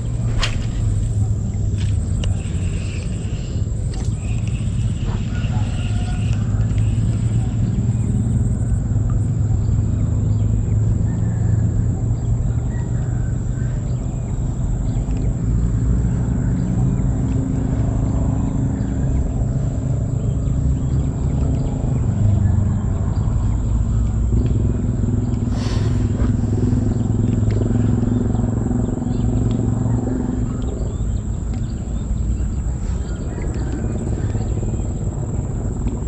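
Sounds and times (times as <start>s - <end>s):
short hisses: 0.0s - 6.6s, 25.5s - 27.2s
boat engine humming: 0.0s - 9.2s, 24.1s - 36.0s.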